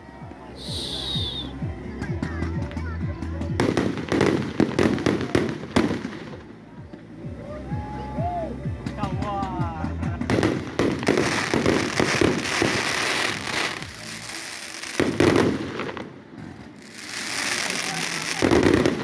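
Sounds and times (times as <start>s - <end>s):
fireworks bangs and crackling: 0.1s - 7.4s, 8.6s - 19.0s.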